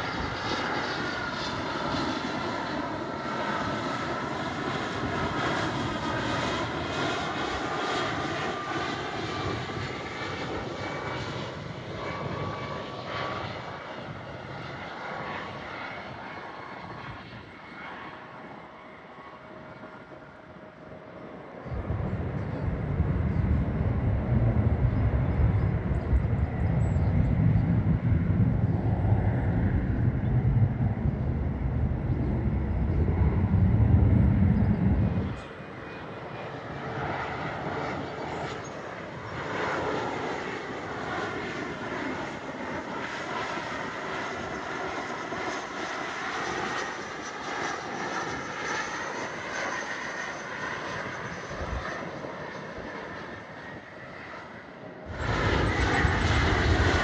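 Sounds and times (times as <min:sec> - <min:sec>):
jet engines low rumble: 0:00.0 - 0:57.0
jet whine with bending tones: 0:21.1 - 0:57.0.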